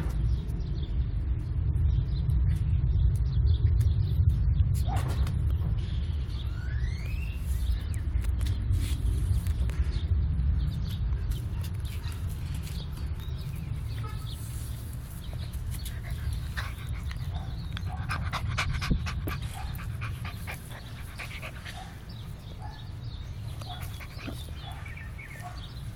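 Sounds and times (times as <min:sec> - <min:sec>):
steady low rumble: 0:00.0 - 0:25.9
puppies panting and whimpering: 0:14.4 - 0:25.9.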